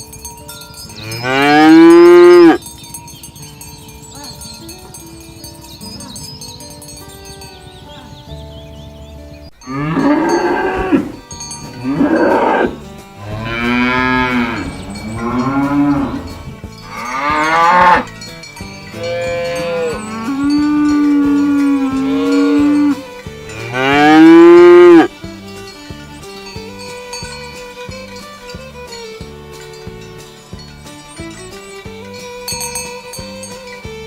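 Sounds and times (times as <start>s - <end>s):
cattle mooing: 9.6s - 18.1s, 23.6s - 25.1s.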